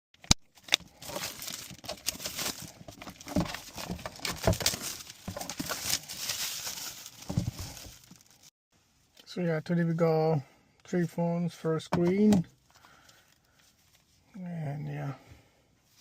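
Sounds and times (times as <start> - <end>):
rustling and crinkling: 0.6 - 8.5.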